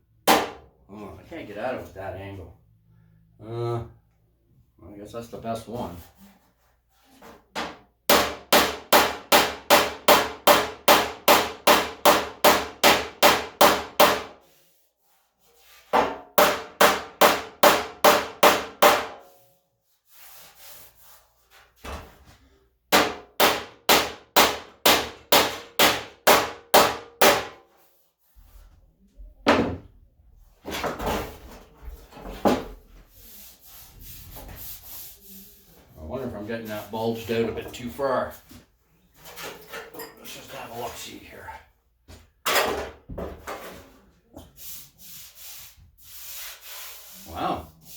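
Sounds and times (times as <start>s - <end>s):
hammer on steel: 22.9s - 27.6s.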